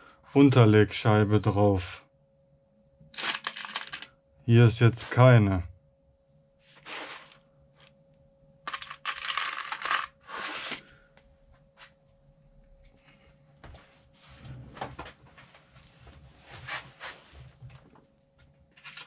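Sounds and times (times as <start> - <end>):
small metal parts clinking: 3.2 - 4.1, 8.7 - 10.2, 18.8 - 19.0.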